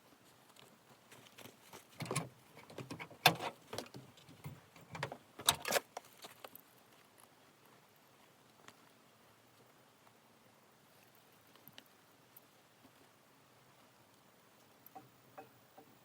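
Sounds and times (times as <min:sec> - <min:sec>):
horse tack rustling and clinking: 0:00.5 - 0:07.4.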